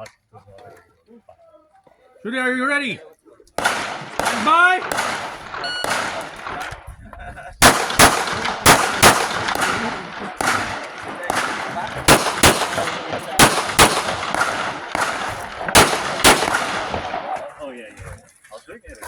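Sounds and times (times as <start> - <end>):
rapid pistol shots: 3.6 - 6.9, 7.6 - 17.6.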